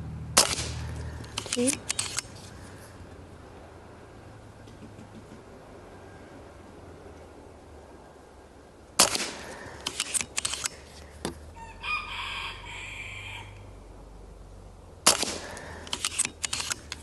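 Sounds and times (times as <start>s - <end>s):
air rifle shots: 0.4s - 2.3s, 9.0s - 10.8s, 15.0s - 17.0s
rifle action clicks: 0.4s - 2.4s, 9.0s - 10.8s, 15.1s - 17.0s
rooster crowing: 11.5s - 13.8s.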